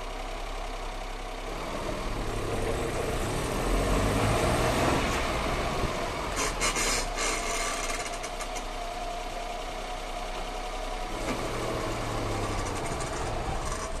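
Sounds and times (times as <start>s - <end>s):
car engine running: 0.0s - 14.0s.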